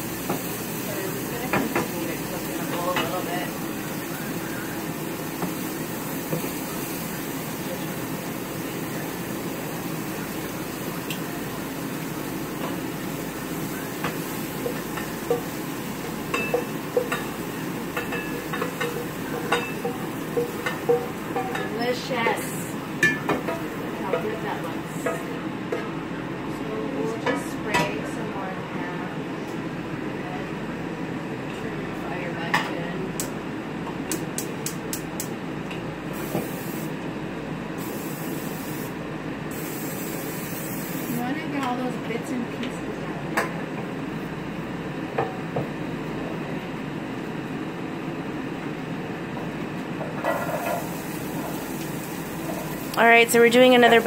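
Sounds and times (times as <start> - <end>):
vegetables sizzling in a frying pan: 0.0 - 25.4, 36.1 - 37.0, 37.8 - 41.8, 50.2 - 54.0
gas burner hissing: 0.0 - 25.7, 36.0 - 37.0, 37.7 - 41.8, 50.2 - 54.0.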